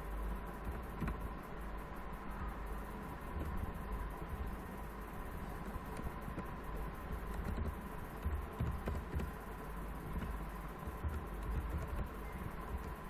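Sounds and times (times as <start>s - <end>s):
low background hum: 0.0s - 13.0s
computer keyboard typing: 5.9s - 13.0s.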